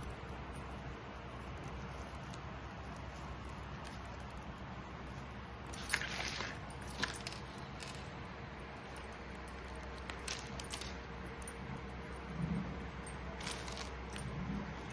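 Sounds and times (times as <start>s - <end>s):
small hard items clicking: 0.0s - 12.3s, 13.0s - 14.9s
small items clattering: 5.6s - 8.1s, 9.4s - 11.5s, 13.3s - 14.9s.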